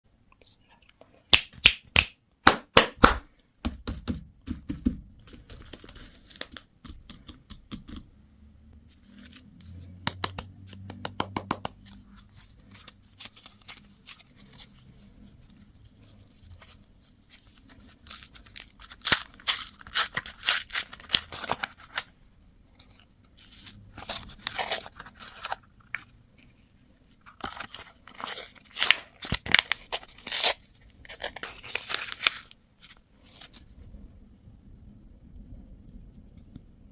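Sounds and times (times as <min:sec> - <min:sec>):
packaging tearing and crinkling: 0:17.6 - 0:22.1, 0:24.0 - 0:25.6, 0:27.3 - 0:33.7.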